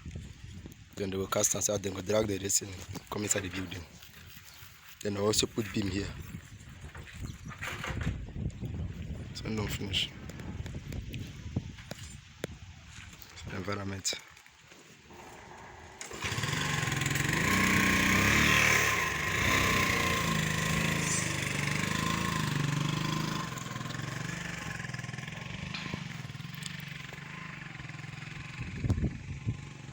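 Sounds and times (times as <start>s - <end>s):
small vehicle engine running: 15.1s - 29.9s.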